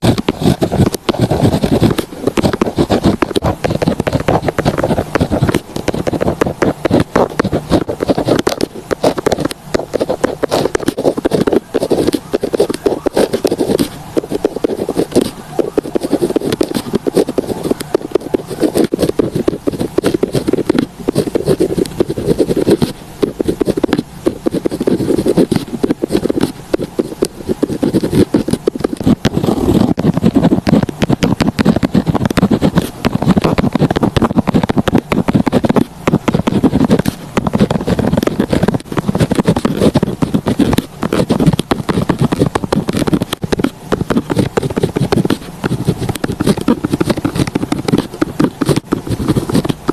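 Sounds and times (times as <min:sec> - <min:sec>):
pen scratching on paper: 0:00.0 - 0:49.9.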